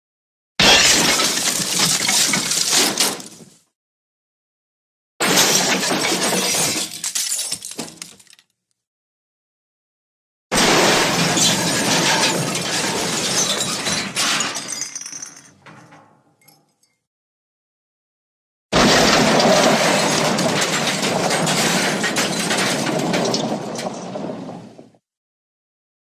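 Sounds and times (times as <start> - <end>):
crash with shattering: 0.6 - 3.4, 5.2 - 8.3, 10.5 - 15.9, 18.8 - 24.9
debris clinking: 0.6 - 3.4, 10.6 - 17.0, 18.8 - 24.7.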